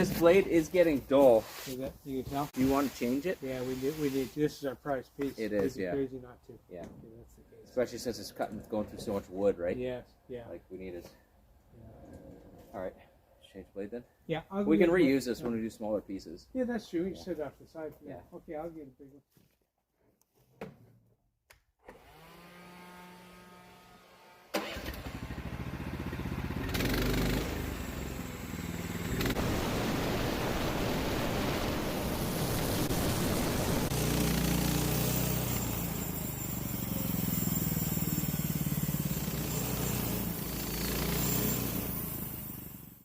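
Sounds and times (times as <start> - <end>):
engine starting and running: 24.5 - 31.0, 31.7 - 43.0.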